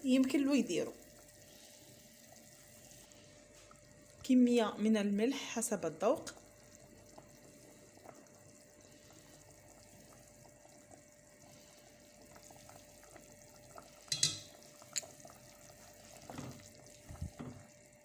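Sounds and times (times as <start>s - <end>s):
faint steady hiss: 0.0s - 18.0s
utensil clinking against dish: 14.1s - 14.6s.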